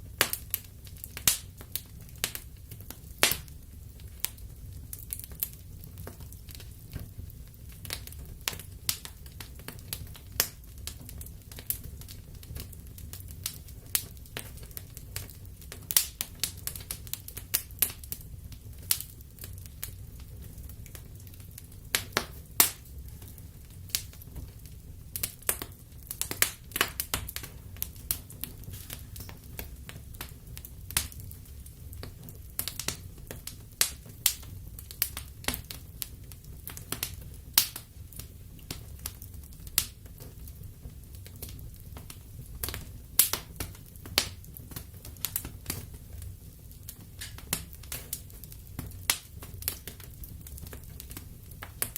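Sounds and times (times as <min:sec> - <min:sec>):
fire crackling and popping: 0:00.0 - 0:51.9
low rumble of flames: 0:00.0 - 0:51.9.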